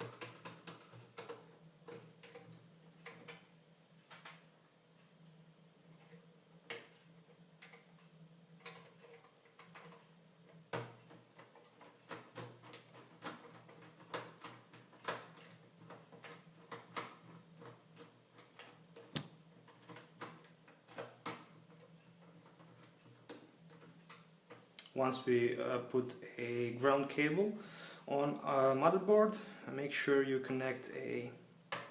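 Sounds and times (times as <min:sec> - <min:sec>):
faint steady hum: 0:00.0 - 0:31.9
sharp knocks: 0:19.1 - 0:19.4.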